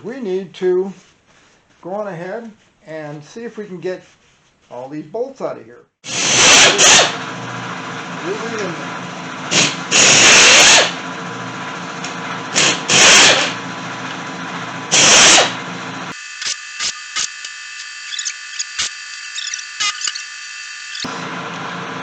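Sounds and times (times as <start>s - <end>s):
pneumatic air tool bursts: 6.0s - 7.2s, 9.5s - 11.0s, 12.5s - 13.6s, 14.9s - 21.1s.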